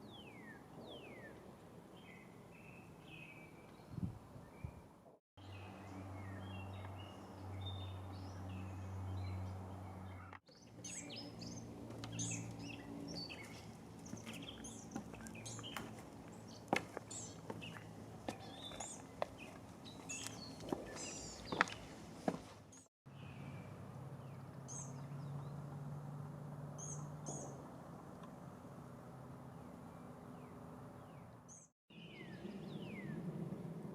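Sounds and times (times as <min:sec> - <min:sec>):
songbirds chirping: 0:00.0 - 0:33.3.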